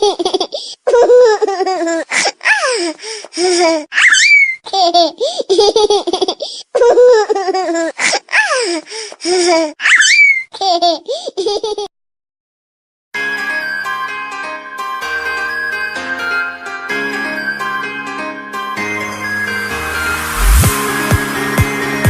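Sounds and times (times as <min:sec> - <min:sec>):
baby giggling and squealing: 0:00.0 - 0:11.9
music jingle: 0:13.2 - 0:22.0.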